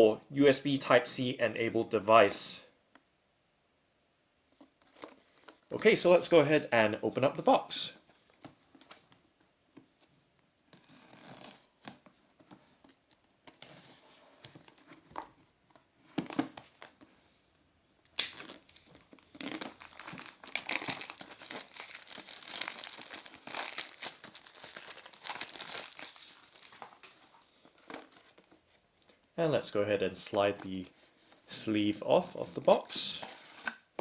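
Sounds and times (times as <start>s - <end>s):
packaging crinkling and tearing: 18.0s - 27.6s.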